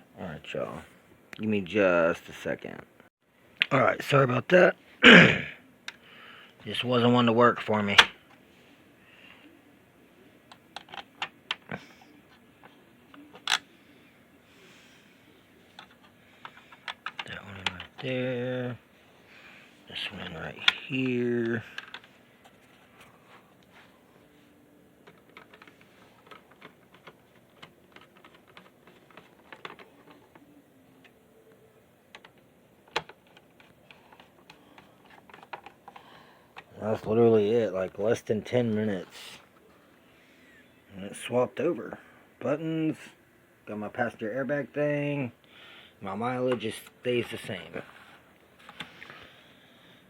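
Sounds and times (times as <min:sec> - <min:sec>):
plastic parts clicking: 0:13.1 - 0:13.7, 0:15.7 - 0:18.1, 0:20.2 - 0:22.2, 0:25.0 - 0:31.2, 0:32.1 - 0:36.7.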